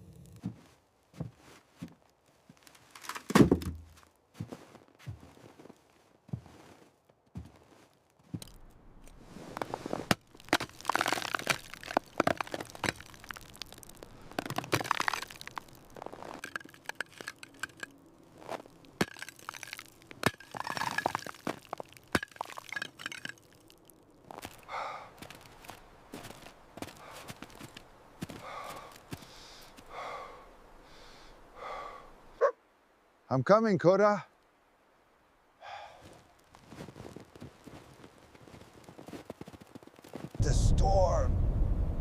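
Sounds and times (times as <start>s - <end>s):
wood cracking and crunching: 0.0s - 4.2s, 7.4s - 29.9s.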